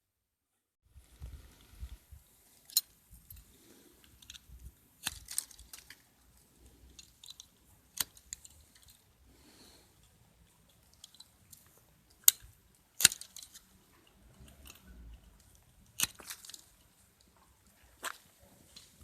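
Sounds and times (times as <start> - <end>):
rustling: 0.9 - 19.0
ratchet pruner clicks and snaps: 12.1 - 13.7, 14.4 - 16.8.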